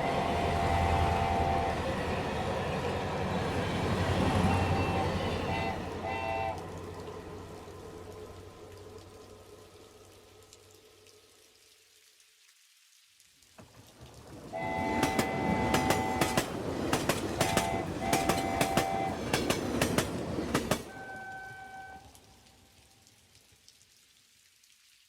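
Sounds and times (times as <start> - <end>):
multi-tone train horn: 0.0 - 7.2, 14.4 - 22.4
faint rain: 0.0 - 25.0
train wheels clattering: 14.7 - 20.9.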